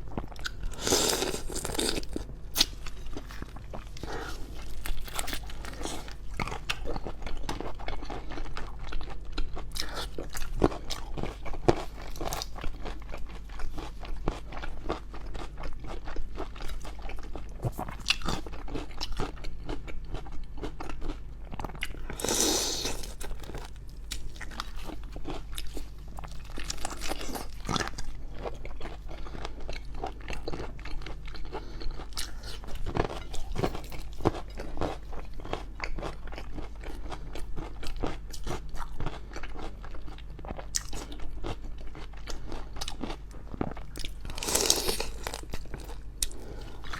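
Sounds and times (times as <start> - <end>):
crunching and wet chewing: 0.1 - 46.9.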